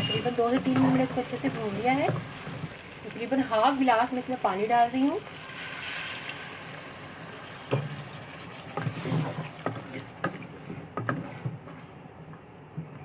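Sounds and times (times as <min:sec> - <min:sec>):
liquid sloshing: 0:07.7 - 0:12.5.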